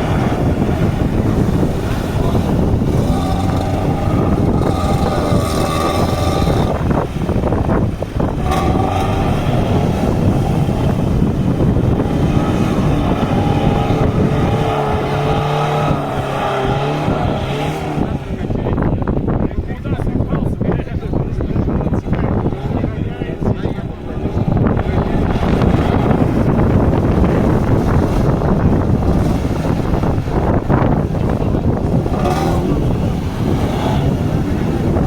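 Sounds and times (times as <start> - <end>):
car engine revving hard: 0.0 - 18.6, 22.3 - 35.0.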